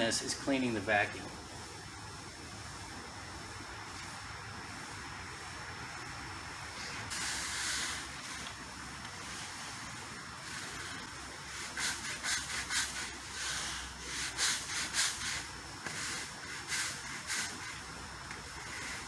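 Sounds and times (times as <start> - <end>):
vacuum cleaner running: 6.8 - 19.0.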